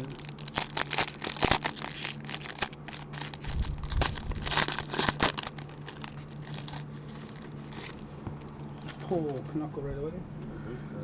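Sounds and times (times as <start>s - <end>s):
wrapper crinkling and crackling: 0.0s - 9.6s
low hum: 0.0s - 11.0s.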